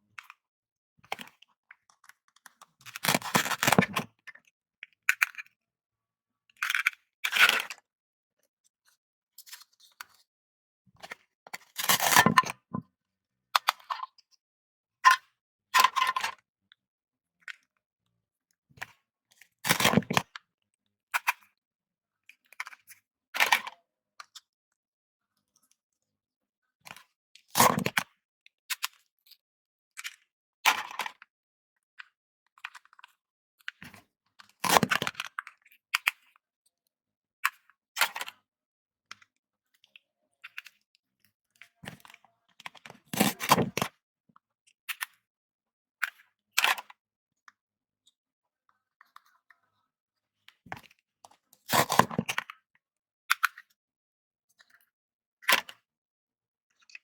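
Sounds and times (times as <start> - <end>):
toy knife cutting toy food: 3.0 - 4.0, 19.7 - 20.2, 43.2 - 43.8, 51.7 - 52.4.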